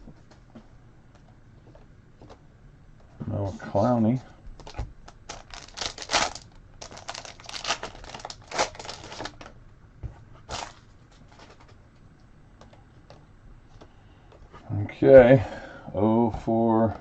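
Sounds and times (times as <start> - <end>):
foil wrapper crinkling and tearing: 4.6 - 9.5, 10.5 - 11.7.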